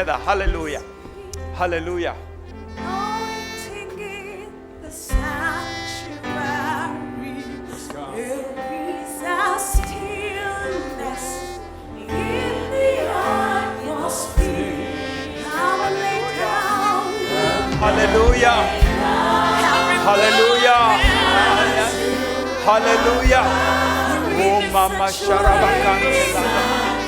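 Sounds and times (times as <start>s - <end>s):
low bass notes: 0.0s - 4.0s, 9.8s - 27.0s
keyboard chords: 0.0s - 27.0s
voices singing with vibrato: 6.2s - 27.0s
soft low thumps: 9.8s - 10.4s, 17.6s - 27.0s.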